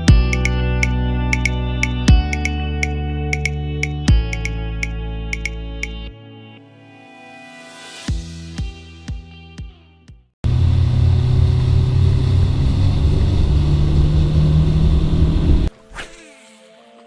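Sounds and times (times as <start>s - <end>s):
boat motor running: 10.5s - 15.7s.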